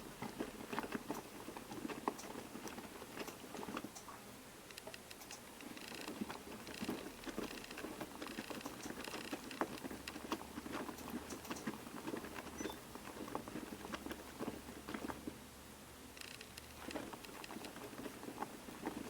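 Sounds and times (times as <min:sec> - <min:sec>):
washing machine sloshing water: 0:06.1 - 0:15.4, 0:16.8 - 0:19.0.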